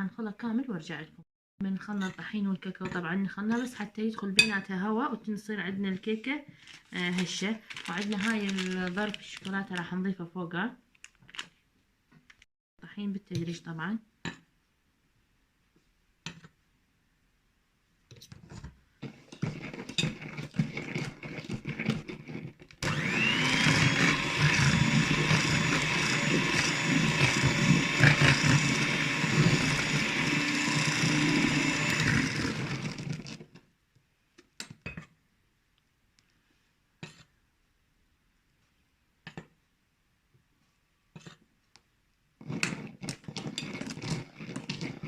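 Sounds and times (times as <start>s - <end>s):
electric mixer whirring: 22.8s - 33.4s.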